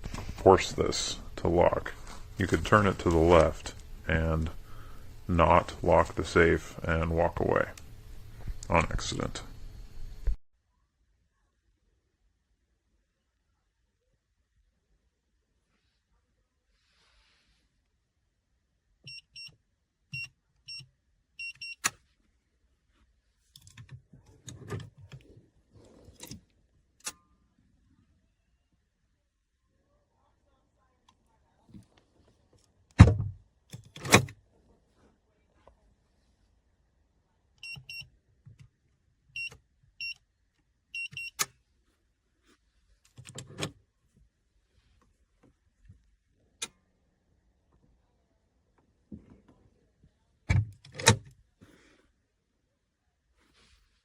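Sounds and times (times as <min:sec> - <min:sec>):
keypad beeps: 0:21.4 - 0:21.9, 0:37.6 - 0:38.1, 0:39.4 - 0:40.2, 0:41.0 - 0:41.4
safe lock and door clatter: 0:33.7 - 0:34.3, 0:50.5 - 0:51.3.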